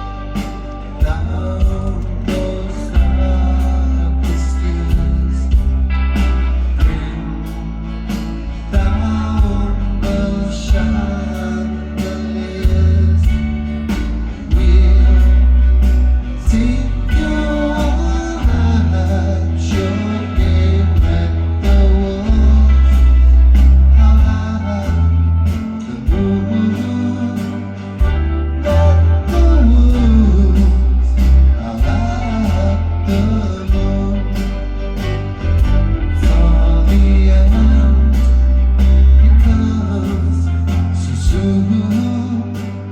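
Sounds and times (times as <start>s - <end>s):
person singing: 0.0s - 7.6s, 8.4s - 42.9s
electric guitar: 0.0s - 42.9s
heavy bass: 0.0s - 42.9s.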